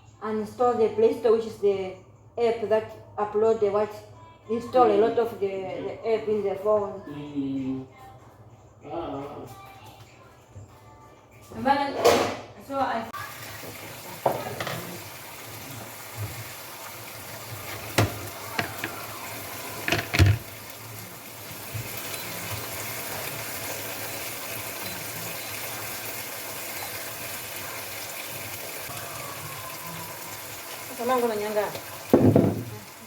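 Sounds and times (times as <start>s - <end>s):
pans and utensils clattering: 13.4s - 21.0s, 31.7s - 33.0s.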